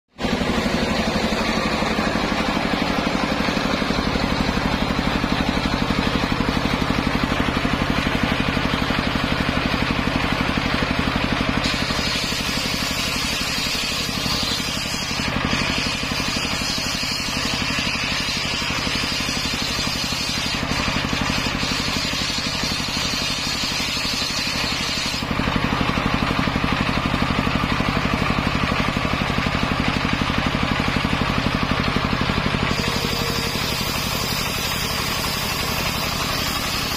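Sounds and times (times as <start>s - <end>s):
engine driving circular saw: 0.1s - 36.9s
saw blade cutting wood hiss: 11.6s - 25.3s, 32.7s - 36.9s.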